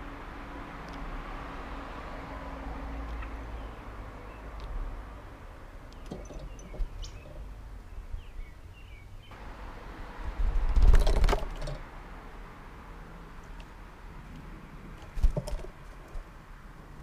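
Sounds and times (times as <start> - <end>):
birds chirping faintly: 3.0 - 9.9
loud rustling close to microphone: 10.4 - 11.8.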